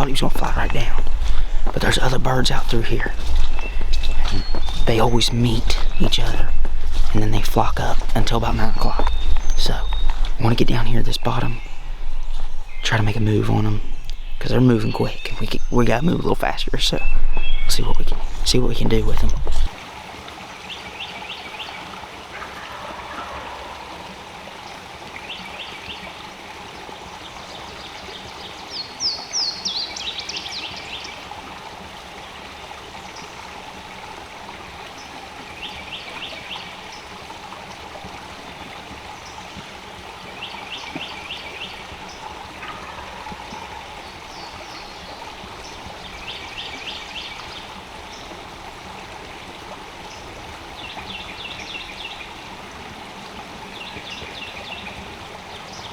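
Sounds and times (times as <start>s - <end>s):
high falling bird chirps: 0.0s - 19.2s
songbird trilling: 0.0s - 19.7s
stream flowing: 0.0s - 55.9s.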